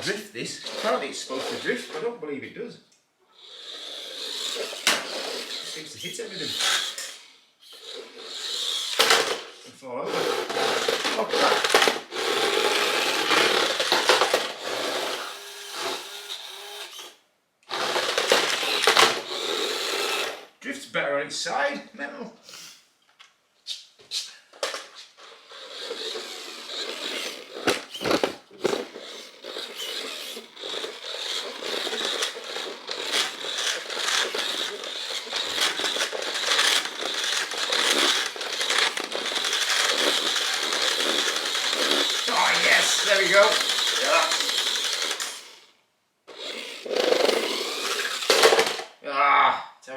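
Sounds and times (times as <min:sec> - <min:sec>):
small electric motor whining: 0:00.0 - 0:02.0, 0:03.3 - 0:20.5, 0:25.2 - 0:48.9
toy truck scraping and rattling: 0:00.0 - 0:02.2, 0:03.3 - 0:20.5, 0:24.6 - 0:45.7, 0:46.3 - 0:49.0
tyres skidding on hard floor: 0:04.1 - 0:07.2, 0:08.4 - 0:15.2, 0:17.7 - 0:20.4, 0:24.6 - 0:45.6, 0:46.9 - 0:48.9.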